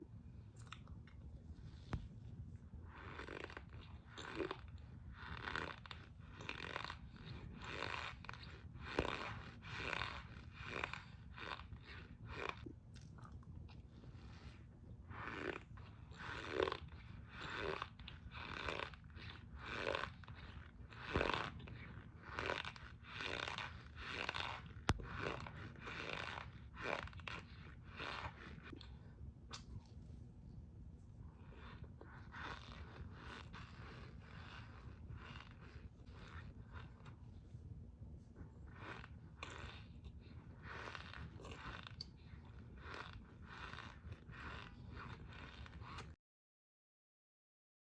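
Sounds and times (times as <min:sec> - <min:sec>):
squeaky crunchy chewing: 0:03.0 - 0:13.4, 0:15.1 - 0:28.9, 0:31.5 - 0:37.2, 0:38.7 - 0:46.1.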